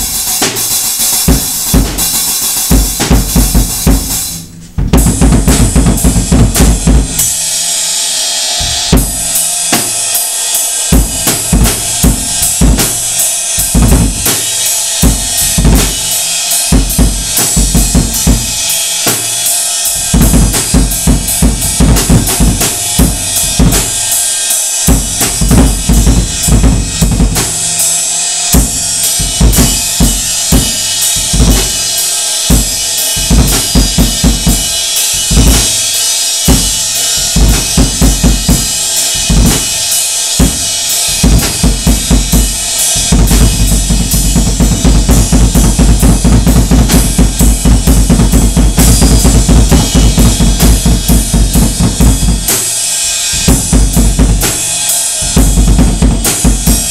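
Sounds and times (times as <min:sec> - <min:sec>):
cymbals crashing: 0:00.0 - 0:56.9
drum kit played hard: 0:00.0 - 0:56.9
bass drum kicks booming: 0:01.2 - 0:07.4, 0:08.6 - 0:09.4, 0:13.6 - 0:14.3, 0:24.9 - 0:27.6, 0:32.5 - 0:35.8, 0:40.4 - 0:52.5, 0:53.4 - 0:54.6, 0:55.3 - 0:56.8.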